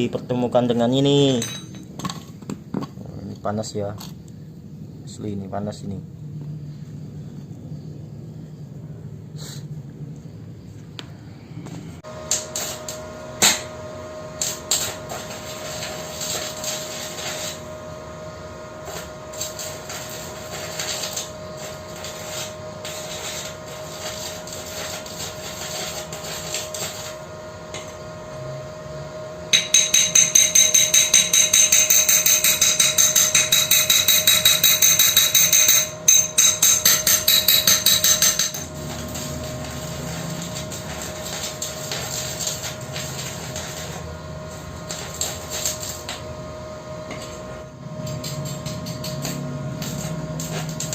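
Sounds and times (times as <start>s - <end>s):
faint steady whine: 0.0s - 50.9s
hammer blows on metal: 29.5s - 38.7s.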